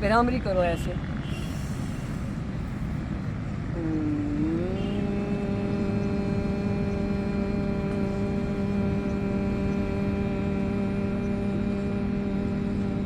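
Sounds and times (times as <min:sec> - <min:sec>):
person humming: 0:03.8 - 0:13.0.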